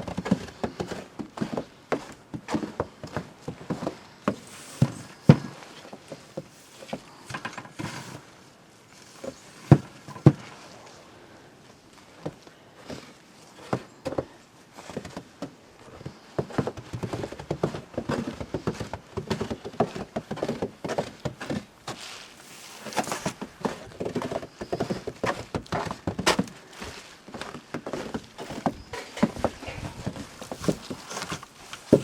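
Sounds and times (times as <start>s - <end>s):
footsteps crunching in snow: 1.0s - 7.1s, 20.4s - 32.0s
rustling: 20.3s - 32.0s.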